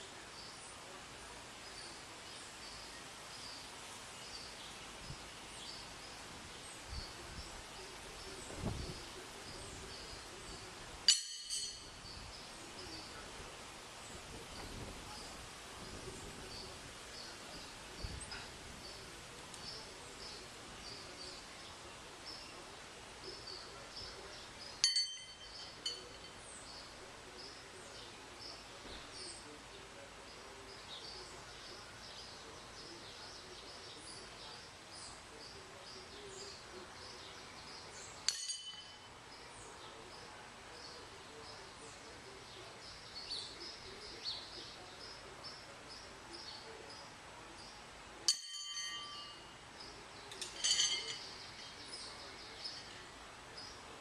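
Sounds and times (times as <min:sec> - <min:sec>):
sharp ringing clinks: 0:11.1 - 0:12.0, 0:24.8 - 0:26.4, 0:38.3 - 0:39.1, 0:48.3 - 0:49.5, 0:50.3 - 0:51.9.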